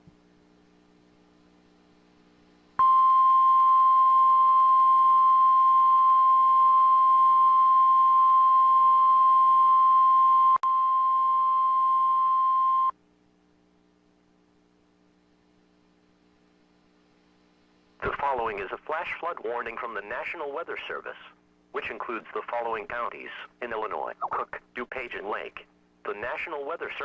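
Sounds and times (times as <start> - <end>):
faint low hum: 0.0 - 27.0
steady alarm tone: 2.8 - 12.9.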